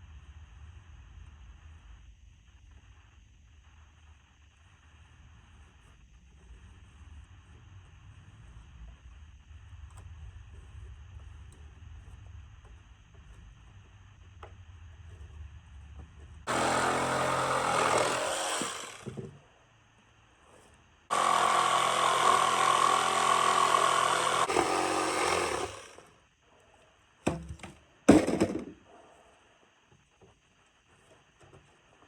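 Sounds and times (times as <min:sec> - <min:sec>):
power saw cutting wood: 0:16.5 - 0:19.3, 0:21.1 - 0:26.1.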